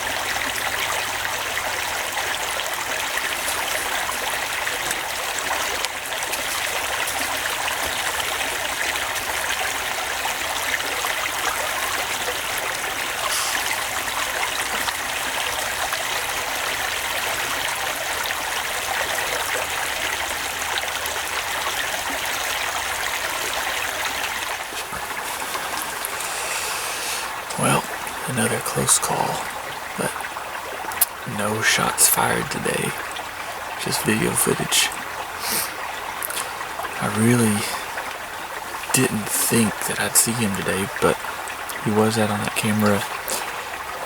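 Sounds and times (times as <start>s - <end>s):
steady rushing hiss: 13.2s - 14.2s, 24.6s - 28.4s.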